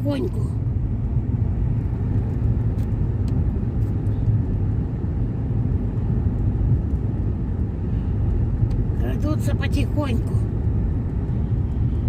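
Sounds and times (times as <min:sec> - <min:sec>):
car driving on snowy road: 0:00.0 - 0:12.0.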